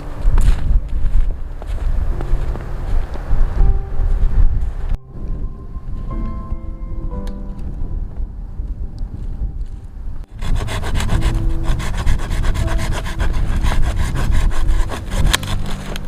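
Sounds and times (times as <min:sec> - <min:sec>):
hand saw cutting wood: 0:10.4 - 0:16.0.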